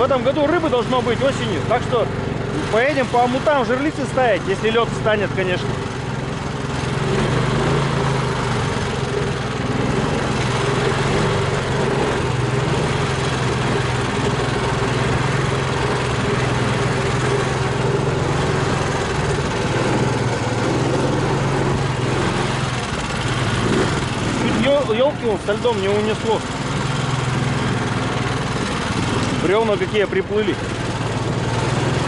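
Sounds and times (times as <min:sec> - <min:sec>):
vehicle engine droning: 0:00.0 - 0:32.0.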